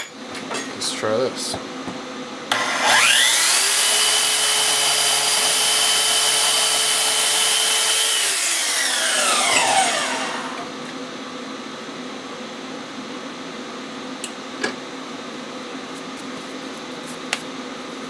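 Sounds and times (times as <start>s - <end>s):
power tool motor whine: 2.5s - 10.7s.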